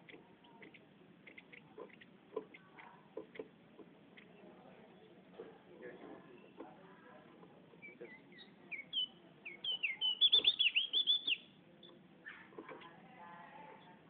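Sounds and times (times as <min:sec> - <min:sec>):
bird singing sweet whistles: 0:07.8 - 0:11.5.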